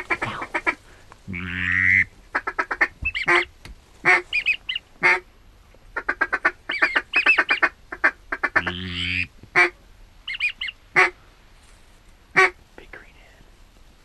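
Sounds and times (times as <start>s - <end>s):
duck call quacks: 0.0s - 5.2s, 6.0s - 11.2s, 12.4s - 12.6s.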